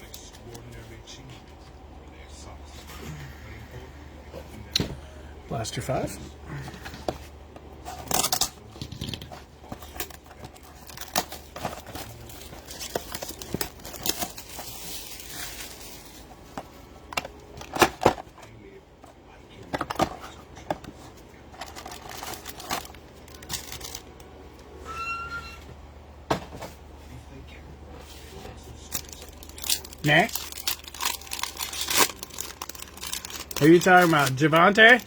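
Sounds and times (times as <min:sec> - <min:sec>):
cards clicking and rustling: 0:06.7 - 0:18.5, 0:19.6 - 0:24.4, 0:28.8 - 0:35.0
wrappers crinkling and tearing: 0:08.0 - 0:16.4, 0:21.4 - 0:24.3, 0:28.8 - 0:35.0
brief high squeak: 0:24.8 - 0:25.7.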